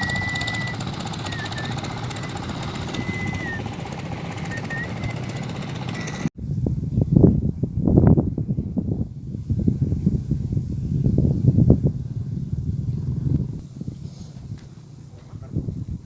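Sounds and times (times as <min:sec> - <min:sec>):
boat engine chugging: 0:00.0 - 0:06.3
high wavering whine: 0:00.0 - 0:06.3
gusty noise: 0:00.8 - 0:16.0.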